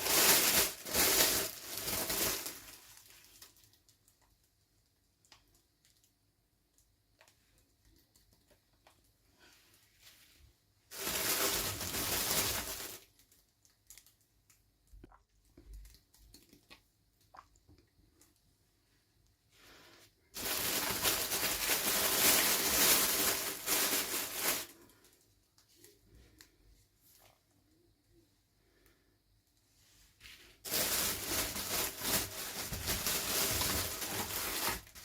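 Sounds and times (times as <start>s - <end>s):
packaging tearing and crinkling: 0.0s - 3.7s, 10.9s - 14.1s, 20.4s - 24.8s, 30.7s - 35.0s.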